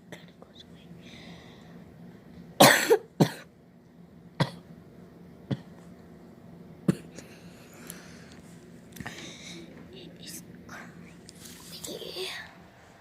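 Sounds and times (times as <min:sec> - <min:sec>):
person coughing: 0:02.6 - 0:03.5, 0:06.9 - 0:07.2.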